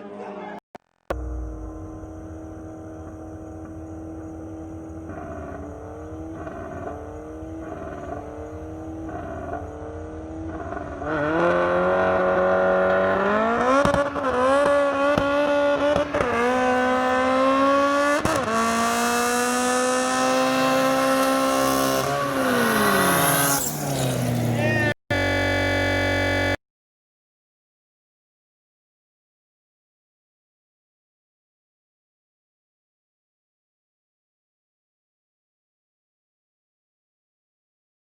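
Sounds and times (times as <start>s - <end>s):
car engine revving and accelerating: 1.1s - 26.6s.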